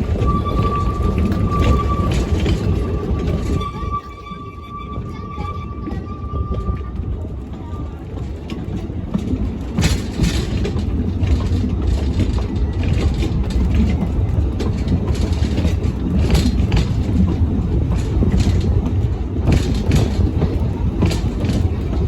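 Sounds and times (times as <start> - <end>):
train rumbling: 0.0 - 22.0
wheels clicking over rail joints: 5.0 - 22.0.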